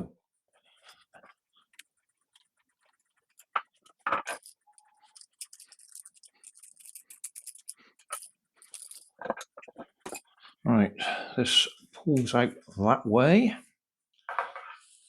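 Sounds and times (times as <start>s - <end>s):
objects scraping and rustling on bench: 14.3s - 15.0s.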